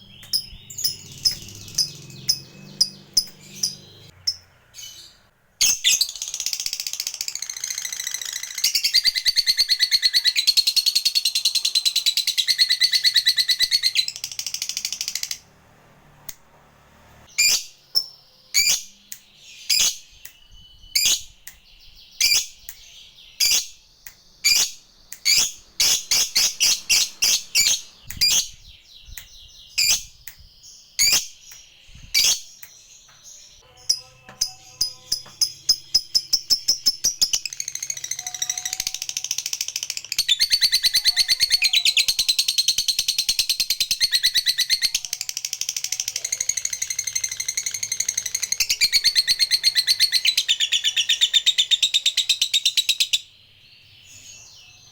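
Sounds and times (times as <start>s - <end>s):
lovebird chattering trill: 0.0s - 15.4s, 24.4s - 28.6s, 33.7s - 53.2s
lovebird sharp chirps: 0.0s - 15.4s, 17.3s - 53.3s.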